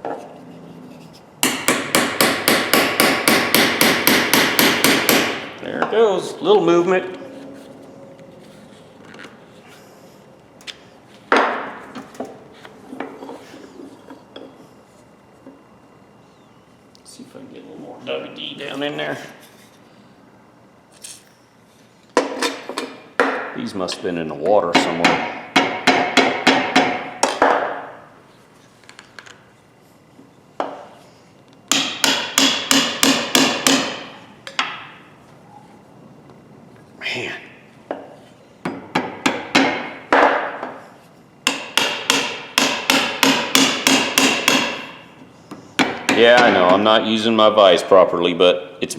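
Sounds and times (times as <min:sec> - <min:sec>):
hammer striking metal: 0:01.4 - 0:05.6, 0:31.7 - 0:34.8, 0:41.5 - 0:45.0.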